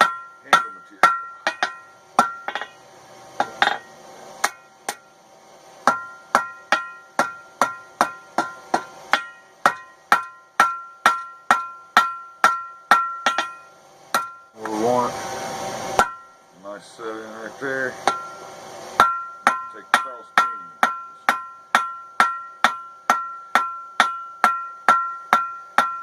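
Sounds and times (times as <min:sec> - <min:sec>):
hammer striking metal on anvil: 0:00.0 - 0:02.8, 0:03.4 - 0:05.1, 0:05.8 - 0:14.8, 0:15.9 - 0:16.4, 0:18.0 - 0:26.0.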